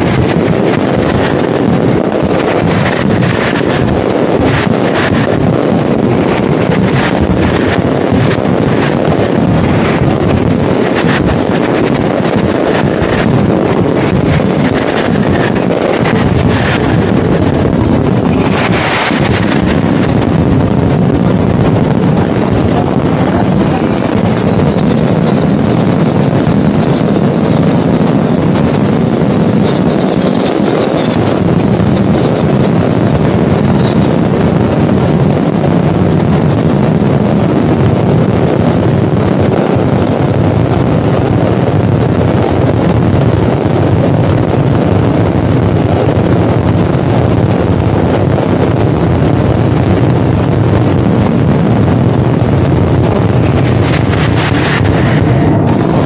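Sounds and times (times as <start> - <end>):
fireworks booms and crackles: 0.0 - 56.0
fireworks whistling: 16.1 - 20.0, 22.1 - 25.5, 32.1 - 34.2.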